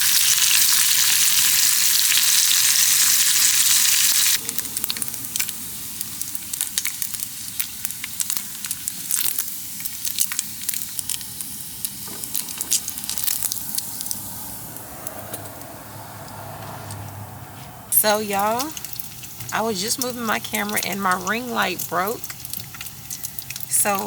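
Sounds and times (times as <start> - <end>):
bacon sizzling in a pan: 0.0 - 14.2, 18.0 - 24.0
sharp pops and crackles: 4.4 - 14.2, 18.3 - 20.1, 22.0 - 23.8.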